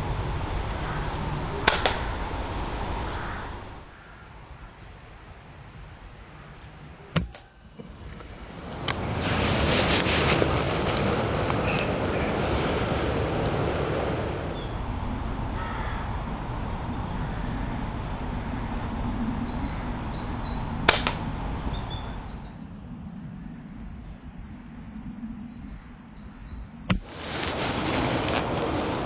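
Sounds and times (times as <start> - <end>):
wind: 0.0 - 29.0
sharp crack: 0.6 - 3.9, 8.6 - 14.9, 20.2 - 22.2, 26.9 - 29.0
small birds chirping: 8.6 - 22.6, 26.4 - 29.0.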